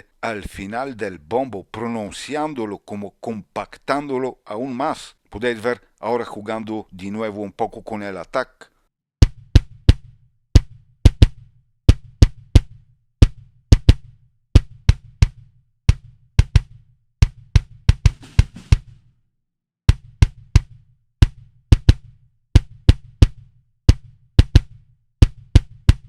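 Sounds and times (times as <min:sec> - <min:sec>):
kick drum loop: 0:09.2 - 0:19.0, 0:19.9 - 0:26.0.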